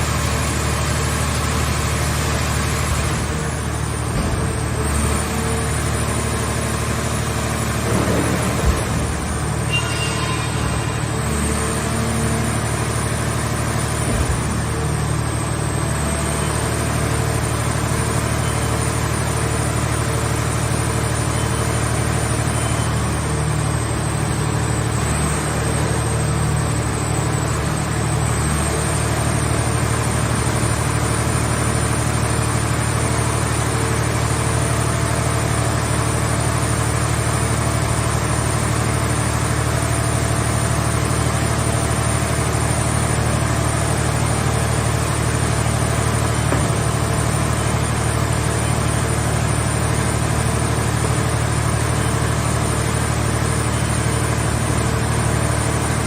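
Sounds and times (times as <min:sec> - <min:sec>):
heavy engine droning: 0:00.0 - 0:56.0
high-pitched whine: 0:08.0 - 0:11.8.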